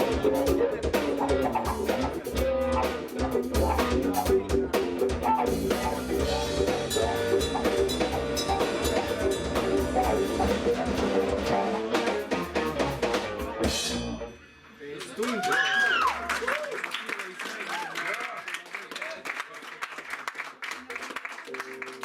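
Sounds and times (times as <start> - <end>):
jazz band playing: 0.0 - 14.5
drum kit: 0.0 - 15.0.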